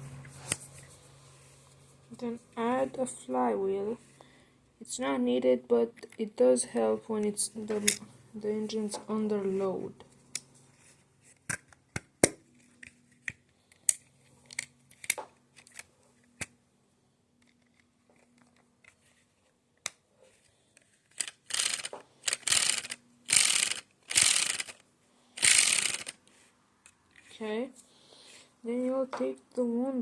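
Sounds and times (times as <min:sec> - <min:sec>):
plastic parts clicking: 0:11.4 - 0:16.6, 0:17.4 - 0:19.1, 0:19.8 - 0:24.8, 0:25.4 - 0:26.2
rattling rustling bursts: 0:25.4 - 0:26.2.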